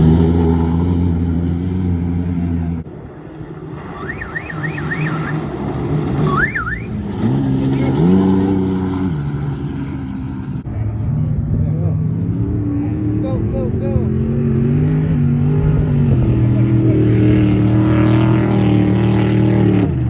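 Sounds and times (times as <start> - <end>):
truck engine steady: 0.0 - 17.9
truck engine climbing in pitch: 0.0 - 20.0.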